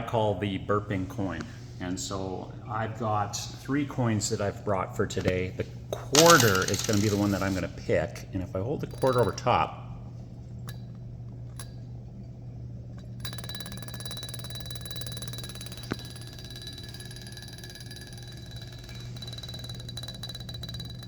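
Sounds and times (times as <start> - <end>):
coin clicks: 6.2 - 7.6
coin rattling on bottle mouth: 6.2 - 7.6.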